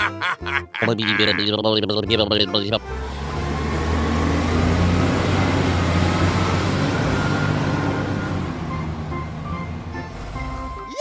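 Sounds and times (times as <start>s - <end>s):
heavy vehicle engine running: 2.4s - 10.9s.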